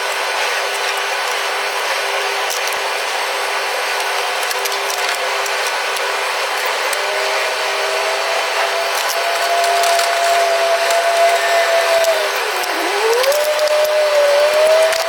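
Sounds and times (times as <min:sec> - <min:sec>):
whooshing machine noise: 0:00.0 - 0:15.0
small clicks: 0:08.9 - 0:15.0.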